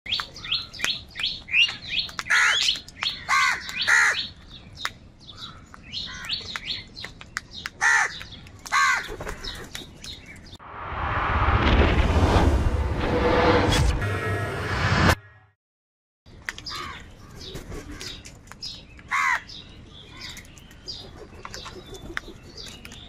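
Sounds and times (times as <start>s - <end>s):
crows cawing: 2.3s - 4.3s, 7.8s - 9.6s, 16.7s - 17.1s, 19.1s - 19.5s.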